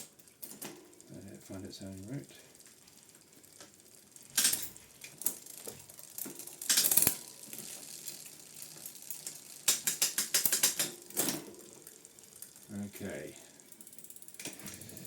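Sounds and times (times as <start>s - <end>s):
sharp clicks of bicycle parts: 0.0s - 1.1s, 2.5s - 12.7s, 13.5s - 15.0s
ratcheting clicks: 2.6s - 12.7s.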